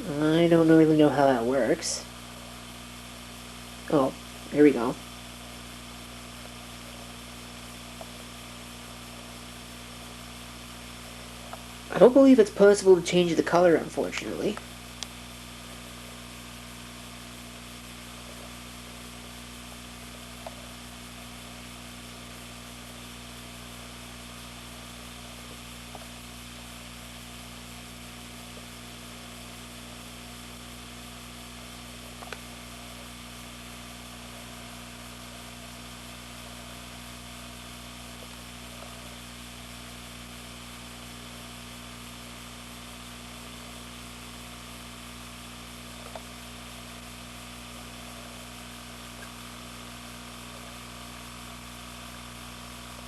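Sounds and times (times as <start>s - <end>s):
low electrical hum: 0.0s - 53.0s
steady hiss: 0.0s - 53.0s.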